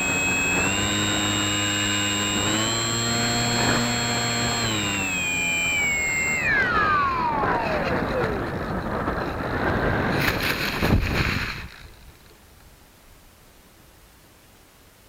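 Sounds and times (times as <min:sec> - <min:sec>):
electric motor winding down: 0:00.0 - 0:08.8.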